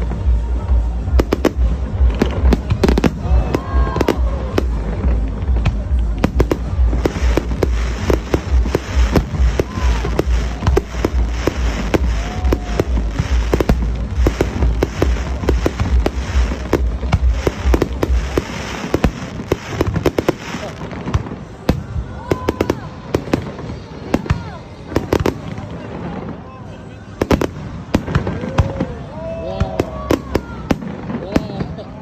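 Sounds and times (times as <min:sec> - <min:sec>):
deep rumble: 0:00.0 - 0:20.3
fireworks bangs and cracks: 0:00.0 - 0:32.0
fireworks whistling: 0:00.0 - 0:32.0.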